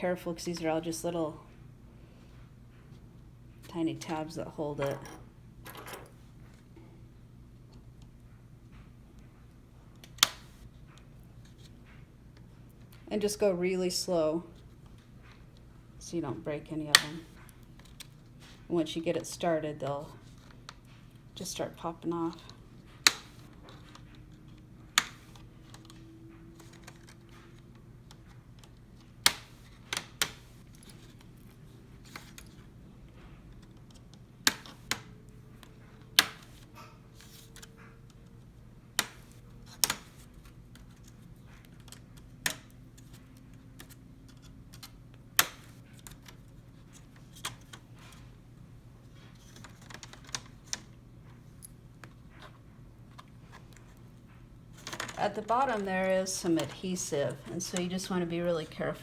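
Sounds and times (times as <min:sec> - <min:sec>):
low steady hum: 0:00.0 - 0:59.0.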